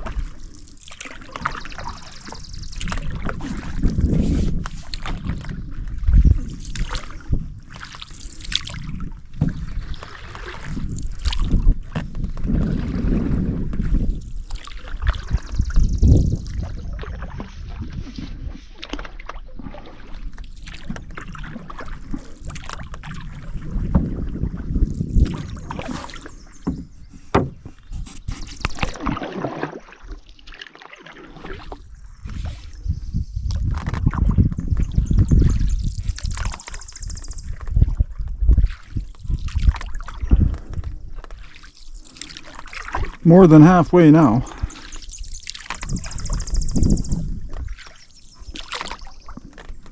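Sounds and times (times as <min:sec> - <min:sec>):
wind rumble on microphone: 0:00.0 - 0:29.3, 0:31.3 - 0:49.9
paddle strokes sloshing in water: 0:00.0 - 0:49.9
knocks on canoe: 0:26.6 - 0:27.8.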